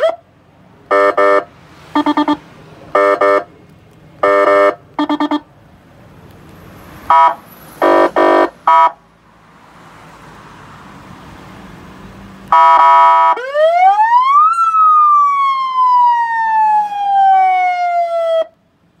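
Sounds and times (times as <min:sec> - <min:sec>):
buzzy horn blast: 0:07.1 - 0:08.9
electronic siren wail: 0:12.6 - 0:18.5.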